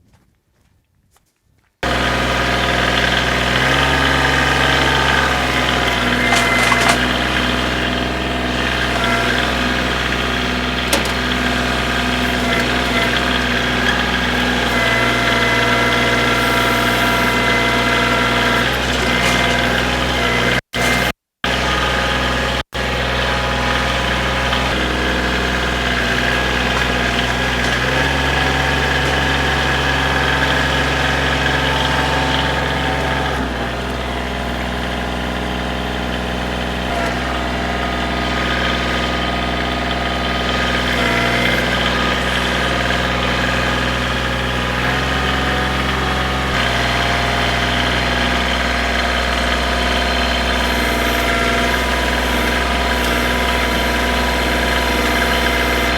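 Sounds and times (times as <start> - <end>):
tractor diesel engine running: 1.8 - 55.9.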